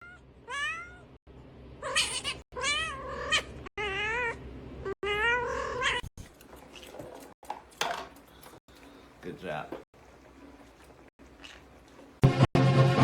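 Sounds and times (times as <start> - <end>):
cat meowing and yowling: 1.8 - 6.0.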